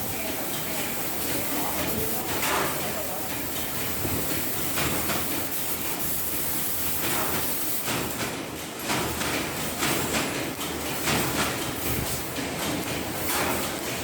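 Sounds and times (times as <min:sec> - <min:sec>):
laser cutter hissing: 0:00.0 - 0:07.8.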